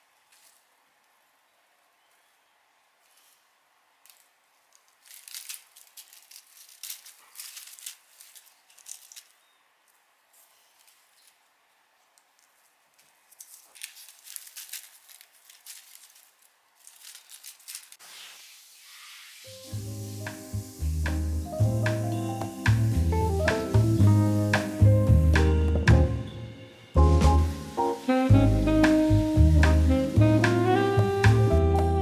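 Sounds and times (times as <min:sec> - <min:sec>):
soft crinkling and rattling: 0:00.0 - 0:01.3, 0:03.0 - 0:18.1.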